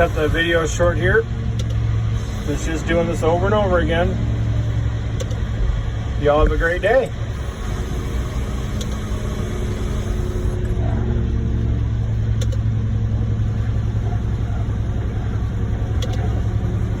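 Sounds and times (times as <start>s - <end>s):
heavy diesel engine running: 0.0s - 17.0s.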